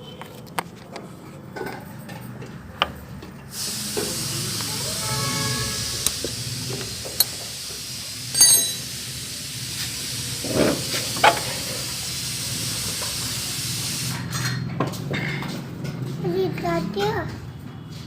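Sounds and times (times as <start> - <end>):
metallic clinks: 8.3 - 9.0.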